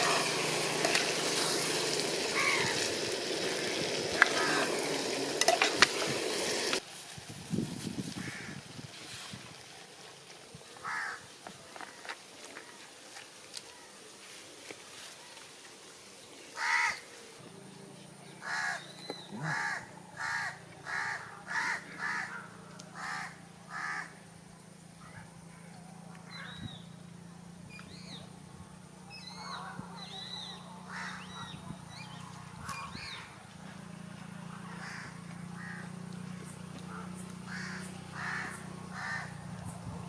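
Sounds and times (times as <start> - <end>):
loud harsh bird calls: 1.4 - 3.2, 16.6 - 17.1, 18.4 - 24.2, 29.1 - 33.4, 34.7 - 39.5.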